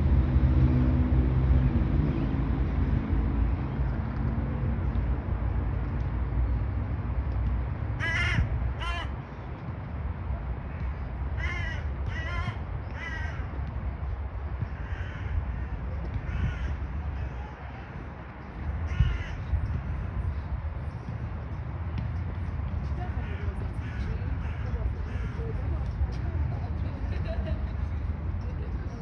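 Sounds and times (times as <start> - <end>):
crow cawing: 8.0 - 9.1, 11.4 - 13.4, 14.8 - 15.7, 18.9 - 19.4, 23.3 - 25.4.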